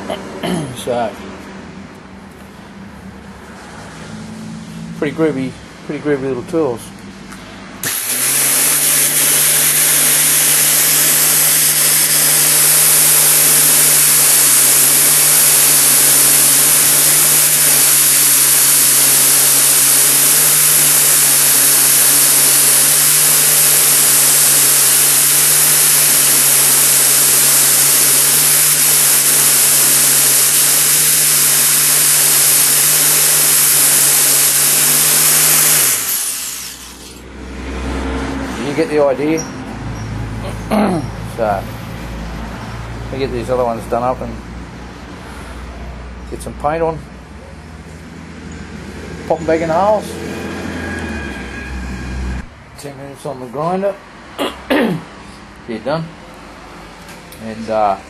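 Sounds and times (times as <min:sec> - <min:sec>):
motor hum: 0:07.8 - 0:37.2
belt sander grinding steel: 0:07.8 - 0:37.3.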